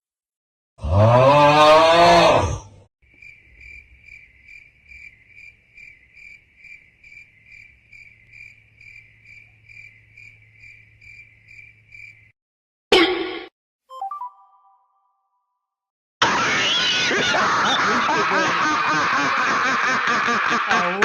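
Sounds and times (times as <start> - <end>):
crickets chirping: 3.0 - 12.4.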